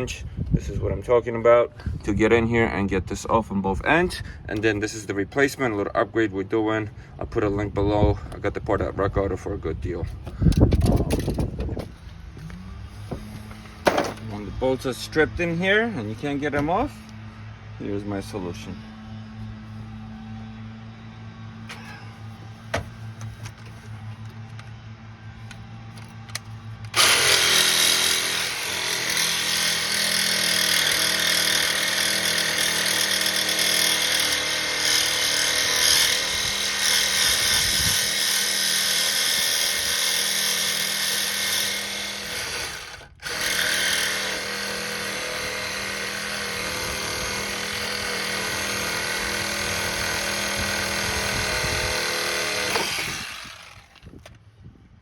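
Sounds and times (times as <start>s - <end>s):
power tool running: 10.5s - 54.4s.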